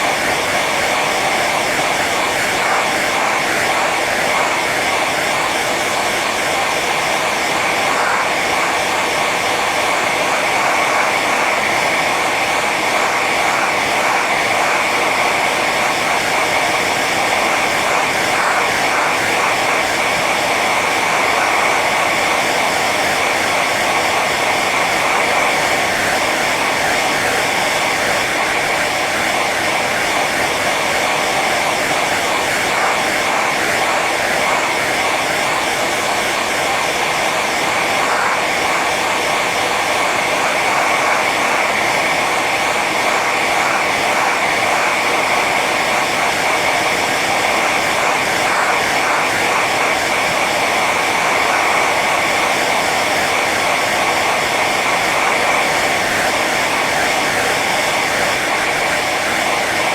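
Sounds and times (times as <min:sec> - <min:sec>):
hair dryer running: 0:00.0 - 0:59.9.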